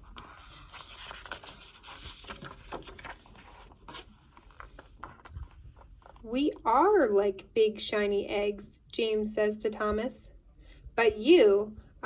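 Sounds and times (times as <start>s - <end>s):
book pages rustling: 0.0s - 6.6s.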